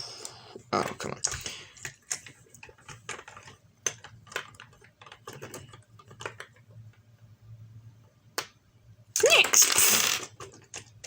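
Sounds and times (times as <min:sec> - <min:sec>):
plastic toy bricks clicking: 0:09.2 - 0:11.0.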